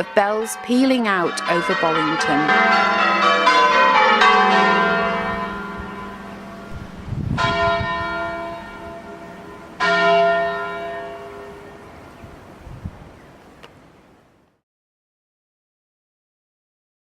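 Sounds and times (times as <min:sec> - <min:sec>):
church bells ringing: 0:00.0 - 0:12.2.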